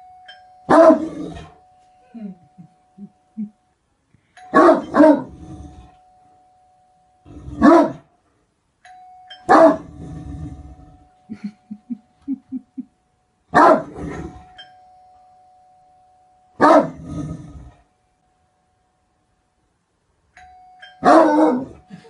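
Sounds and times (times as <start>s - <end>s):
thin steady tone: 0.0s - 22.0s
dog barking deeply: 7.6s - 8.0s, 13.6s - 14.1s, 16.6s - 17.0s, 21.0s - 21.8s.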